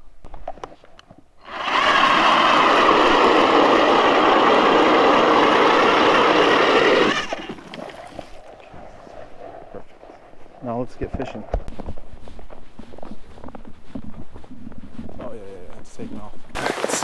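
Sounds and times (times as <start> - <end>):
power ice auger drilling: 1.4 - 8.5, 16.6 - 17.0.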